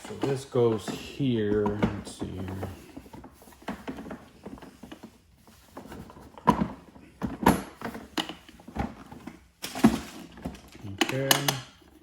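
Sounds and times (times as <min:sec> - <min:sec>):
plastic parts knocking and clicking: 0:05.8 - 0:12.0.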